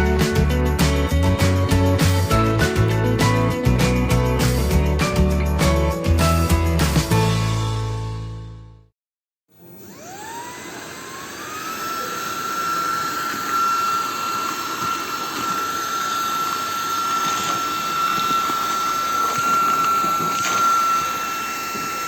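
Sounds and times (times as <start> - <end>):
handheld vacuum cleaner whine: 9.5 - 22.0.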